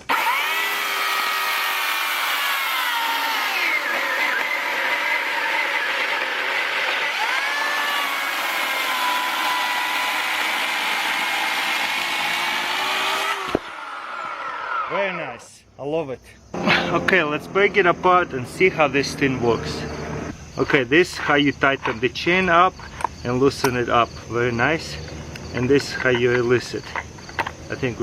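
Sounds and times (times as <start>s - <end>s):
electric chainsaw cutting log: 0.0s - 15.2s.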